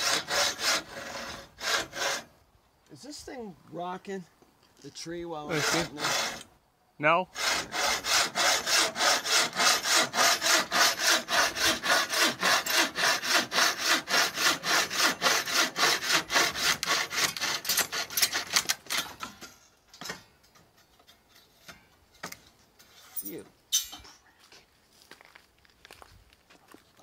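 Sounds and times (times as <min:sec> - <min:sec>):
hand saw cutting wood: 0:00.0 - 0:02.3, 0:05.4 - 0:06.5, 0:07.4 - 0:23.2.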